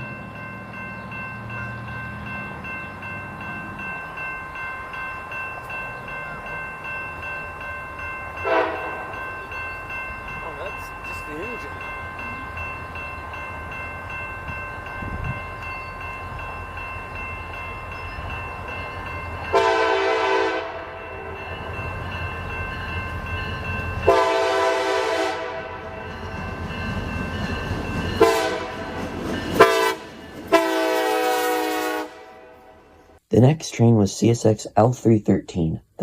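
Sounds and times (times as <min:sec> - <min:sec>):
locomotive horn blasts: 0:08.4 - 0:09.1, 0:19.5 - 0:21.4, 0:24.1 - 0:26.0, 0:28.2 - 0:28.9, 0:29.6 - 0:32.9.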